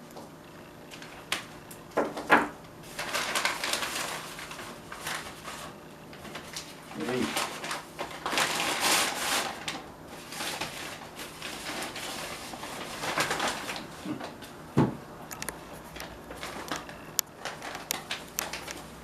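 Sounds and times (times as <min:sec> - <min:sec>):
gift wrapping rustling: 0:02.9 - 0:14.6, 0:15.6 - 0:19.0.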